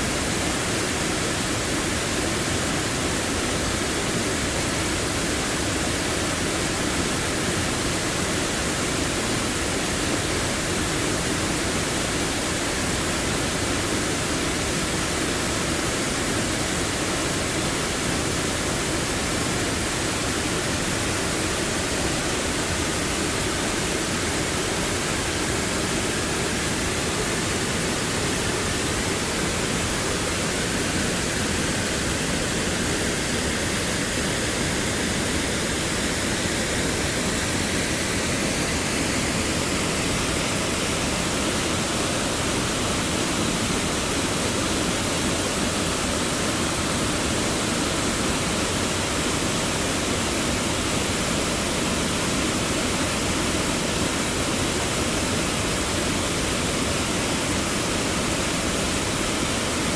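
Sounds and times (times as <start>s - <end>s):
large waterfall roaring: 0.0s - 59.9s.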